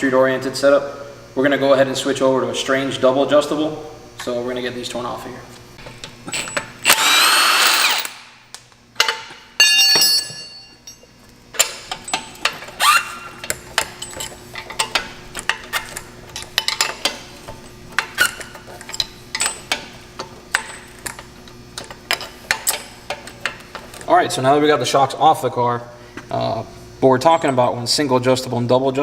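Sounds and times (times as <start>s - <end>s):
metallic tool clicks and clinks: 6.3s - 6.7s, 7.6s - 8.2s
cordless power tool whirring: 6.3s - 8.4s.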